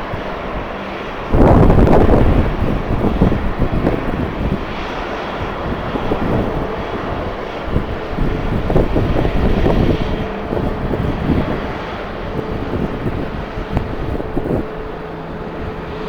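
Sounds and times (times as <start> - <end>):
jet engines running: 0.0 - 16.0
wind buffeting microphone: 0.0 - 16.0.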